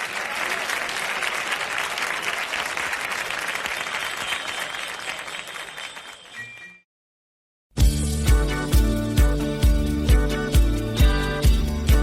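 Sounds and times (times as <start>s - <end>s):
audience applauding: 0.0s - 6.5s.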